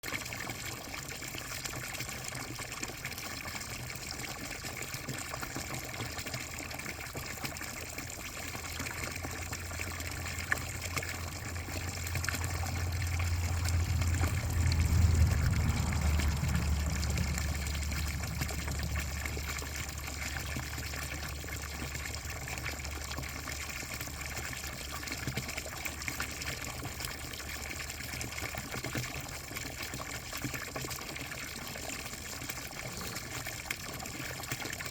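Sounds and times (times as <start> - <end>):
water running and splashing: 0.0 - 34.9
low rumble: 9.7 - 21.8.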